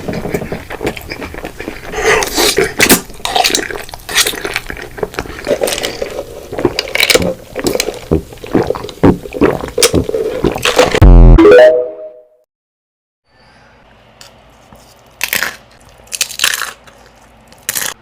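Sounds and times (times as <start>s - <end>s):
wet chewing and crunching: 0.0s - 11.0s, 15.0s - 18.0s
loud distorted burst: 11.0s - 11.4s.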